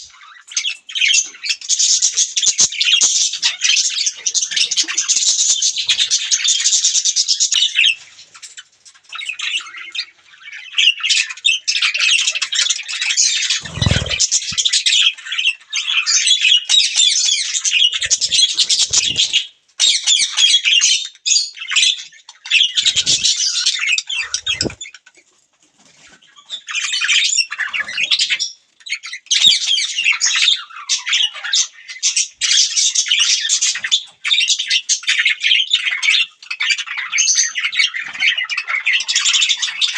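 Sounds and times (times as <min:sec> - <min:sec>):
budgerigars chattering: 0:13.5 - 0:14.7, 0:17.6 - 0:19.5, 0:22.5 - 0:24.9.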